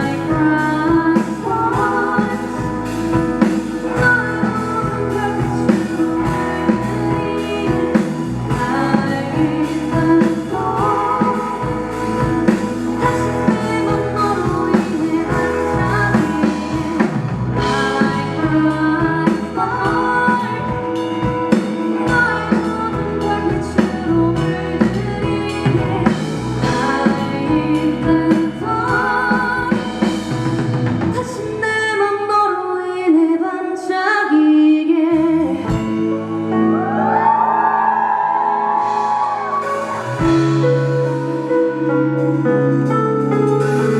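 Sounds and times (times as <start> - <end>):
drum kit: 0.0 - 31.8, 35.1 - 43.9
bass guitar: 0.0 - 31.9, 35.0 - 43.9
electric guitar: 0.0 - 32.4, 34.9 - 43.9
keyboard: 0.0 - 43.9
person singing: 0.0 - 43.9.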